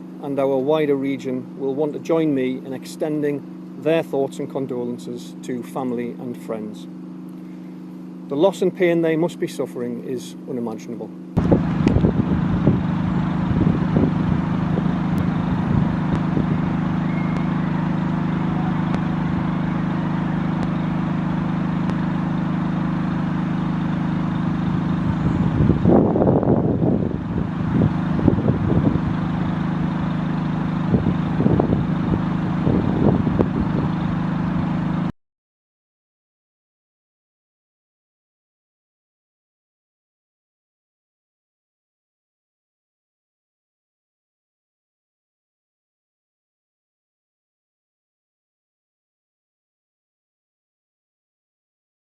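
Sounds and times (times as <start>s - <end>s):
engine humming: 0.0s - 35.1s.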